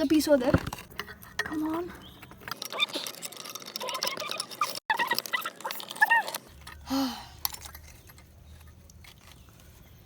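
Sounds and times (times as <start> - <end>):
stones clinking and scraping: 7.4 - 10.0.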